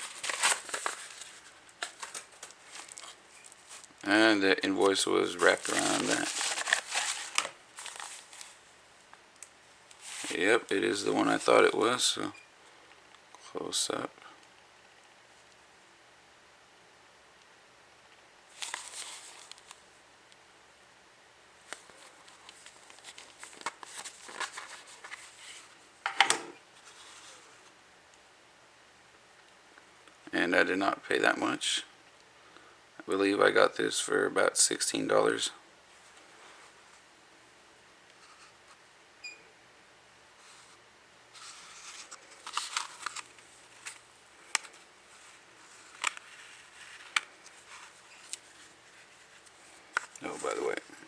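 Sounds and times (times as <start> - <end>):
packaging rustling: 0.0 - 4.0, 4.8 - 8.6, 18.5 - 19.8, 21.7 - 25.7, 41.4 - 51.0.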